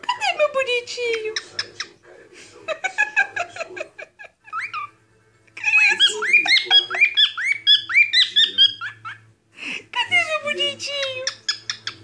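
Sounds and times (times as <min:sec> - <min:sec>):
cockatiel chirping: 0:04.4 - 0:05.0, 0:05.6 - 0:09.3, 0:10.9 - 0:12.0
cockatiel whistling song: 0:05.6 - 0:09.3, 0:11.2 - 0:12.0.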